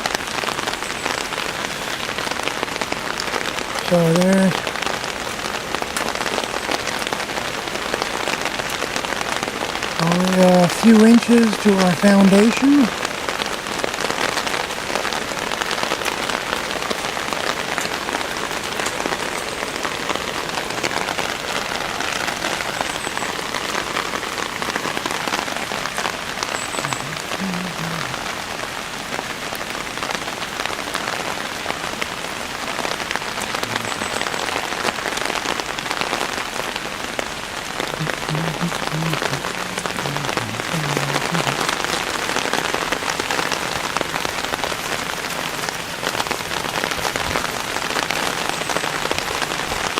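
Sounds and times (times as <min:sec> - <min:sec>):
heavy rain: 0:00.0 - 0:49.9.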